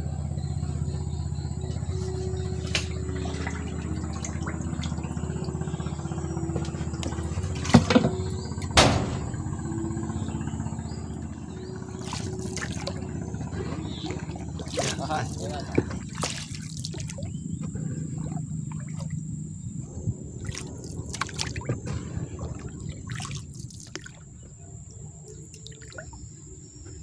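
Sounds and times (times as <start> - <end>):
small engine running: 0.0 - 23.6
sharp knocks: 7.5 - 9.5.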